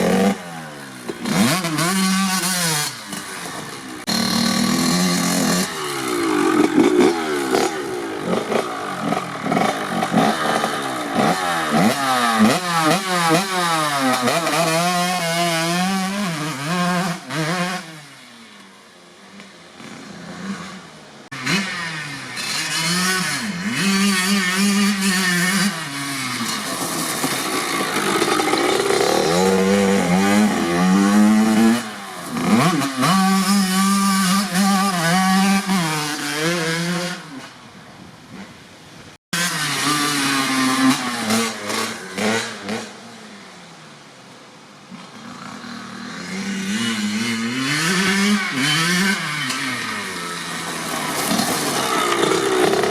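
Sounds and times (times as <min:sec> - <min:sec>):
two-stroke motorcycle engine revving: 0:00.0 - 0:18.5, 0:19.8 - 0:37.4, 0:39.4 - 0:43.2, 0:45.1 - 0:52.9.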